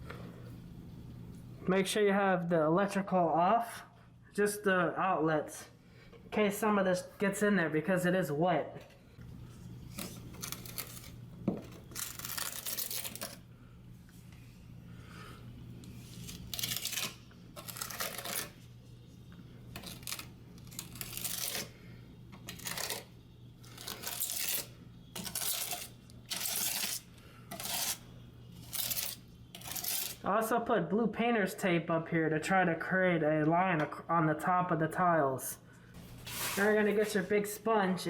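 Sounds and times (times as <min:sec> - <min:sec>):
grout scraping across tiles: 0:09.7 - 0:13.4, 0:15.9 - 0:19.1, 0:19.7 - 0:21.8, 0:22.4 - 0:30.2, 0:36.1 - 0:37.3.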